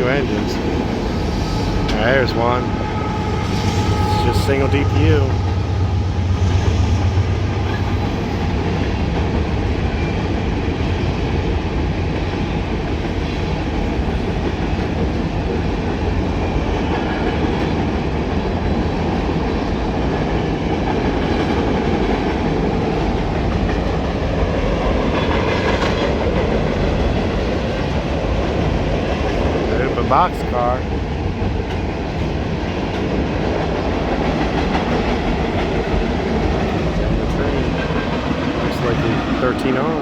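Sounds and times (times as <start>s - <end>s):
locomotive engine drone: 0.0s - 10.7s, 26.2s - 32.7s, 33.8s - 40.0s
train wheels rumbling on rails: 0.0s - 40.0s.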